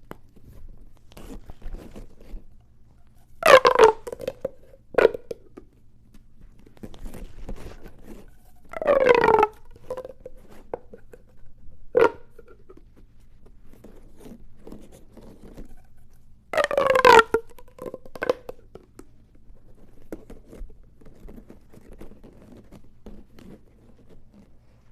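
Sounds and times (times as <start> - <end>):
plastic tube toy rasping: 3.1 - 5.4, 6.8 - 12.9, 13.7 - 18.6.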